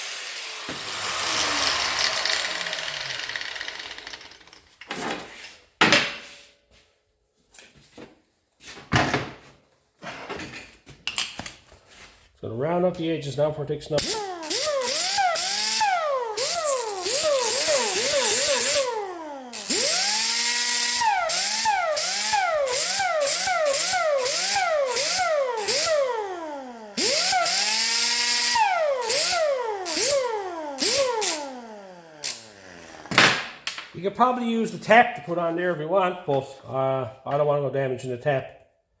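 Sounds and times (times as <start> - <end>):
electric grinder motor: 0.0 - 4.4, 14.0 - 33.2
grinding hiss: 14.0 - 33.0.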